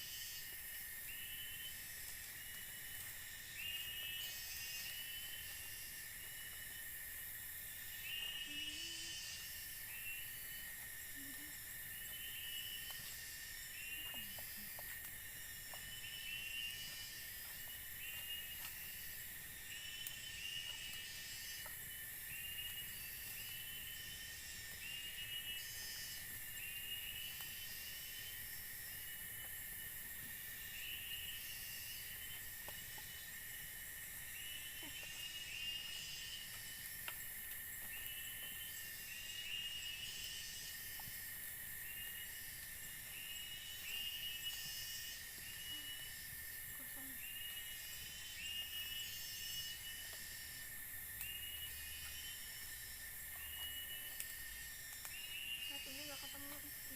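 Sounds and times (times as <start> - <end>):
high-pitched insect drone: 0.0 - 56.9
short insect chirping call: 0.0 - 56.9
faint ticks: 36.4 - 38.6, 51.1 - 52.2, 53.2 - 56.9.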